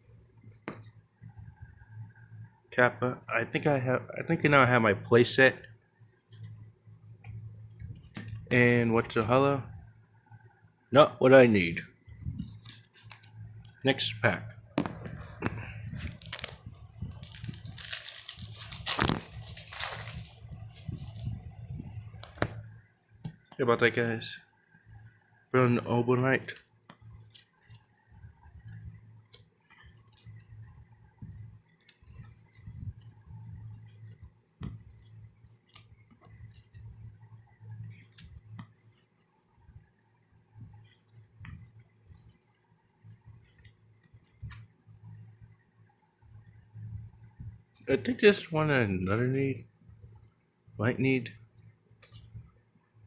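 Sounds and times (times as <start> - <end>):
cards rustling and clicking: 0.4 - 1.0, 7.8 - 9.1, 11.6 - 14.0, 14.8 - 21.4, 25.9 - 28.0, 28.6 - 39.5, 40.6 - 44.8, 51.9 - 52.4
foil pack tearing and crinkling: 16.0 - 21.2.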